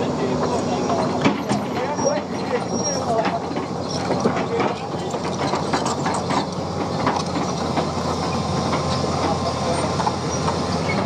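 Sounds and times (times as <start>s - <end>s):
heavy machinery engine running: 0.0s - 11.0s.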